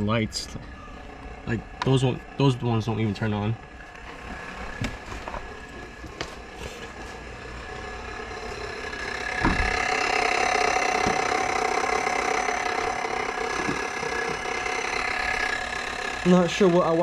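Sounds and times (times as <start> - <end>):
electric whirring hum: 0.0 - 17.0
thump: 9.4 - 9.8.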